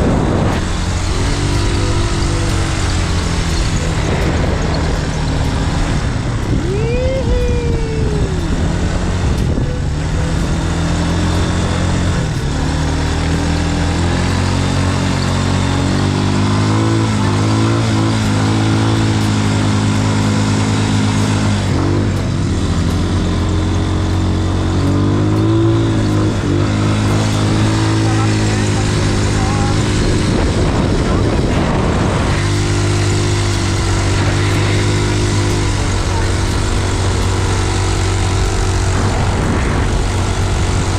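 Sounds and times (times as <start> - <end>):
wind noise: 0.0 - 14.2, 24.8 - 40.9
quad bike engine running: 0.0 - 40.9.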